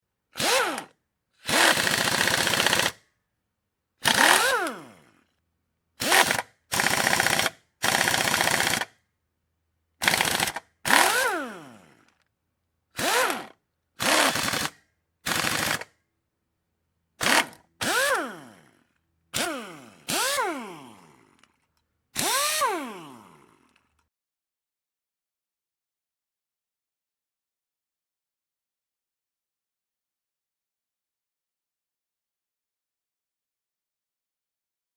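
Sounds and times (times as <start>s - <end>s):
air impact wrench hammering: 1.5s - 3.0s, 4.0s - 4.8s, 6.0s - 8.9s, 10.0s - 11.4s, 13.0s - 15.9s, 17.2s - 18.4s, 19.4s - 20.6s, 22.2s - 22.9s.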